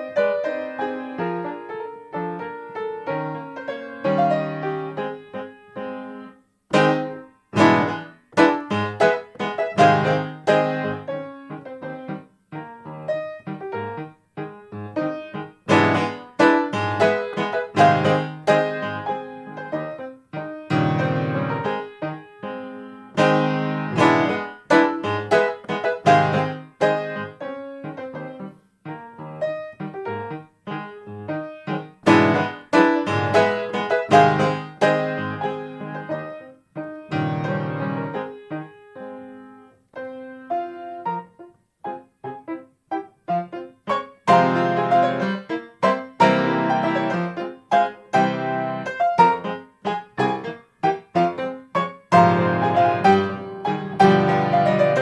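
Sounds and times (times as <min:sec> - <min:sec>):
piano waltz: 0:00.0 - 0:55.0.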